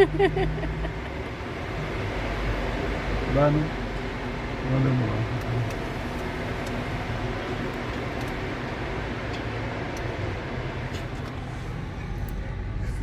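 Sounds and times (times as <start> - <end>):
car cabin driving noise: 0.0 - 13.0.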